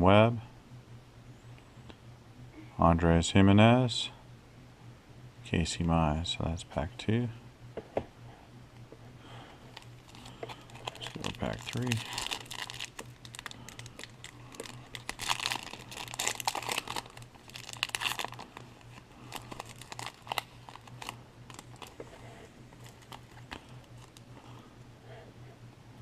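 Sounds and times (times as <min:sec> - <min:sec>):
foil wrapper tearing and crinkling: 0:09.7 - 0:22.0, 0:22.7 - 0:24.3.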